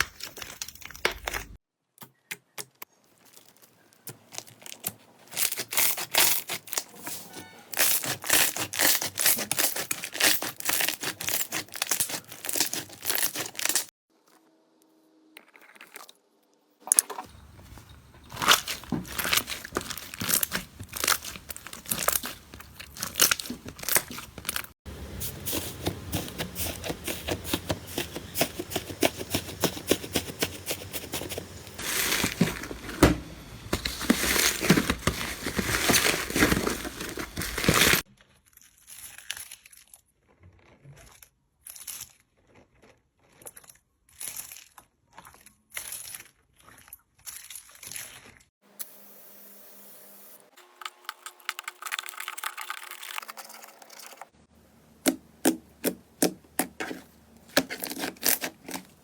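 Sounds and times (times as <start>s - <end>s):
slime crackling and popping: 18.3s - 24.8s.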